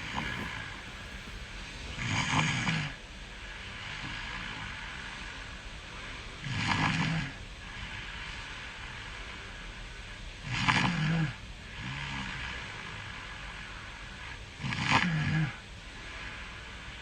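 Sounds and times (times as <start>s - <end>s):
person snoring: 0.0s - 2.3s
quiet breathing: 0.0s - 2.8s.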